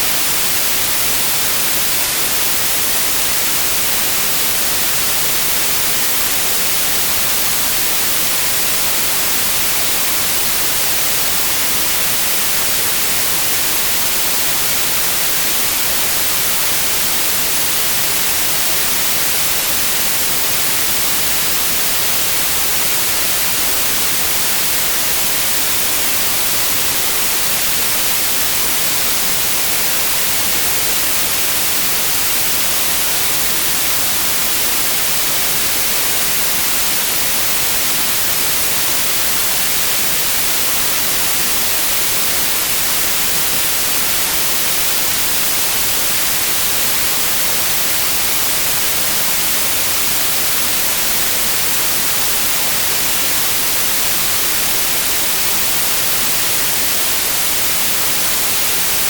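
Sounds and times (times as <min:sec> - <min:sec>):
white noise hiss: 0:00.0 - 0:59.0.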